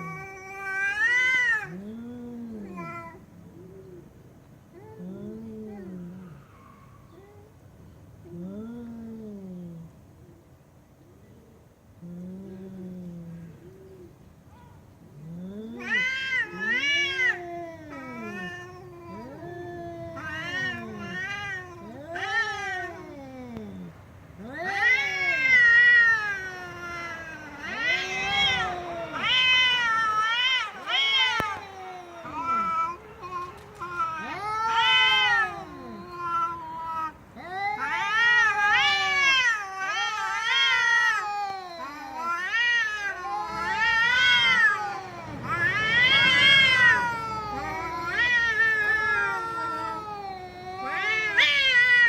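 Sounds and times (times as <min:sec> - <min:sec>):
cat meowing loudly: 0:15.8 - 0:23.1, 0:24.4 - 0:52.0.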